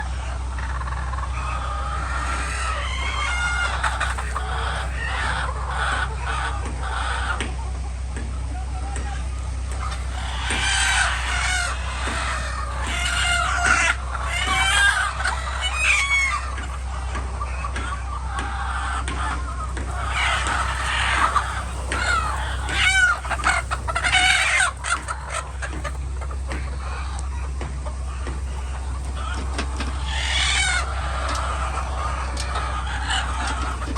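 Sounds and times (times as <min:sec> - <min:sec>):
drawn-out chicken call: 0:00.0 - 0:07.5, 0:08.5 - 0:33.9
chickens clucking and calling: 0:00.0 - 0:33.9
steady low hum: 0:00.0 - 0:33.9
low hum: 0:19.4 - 0:33.9.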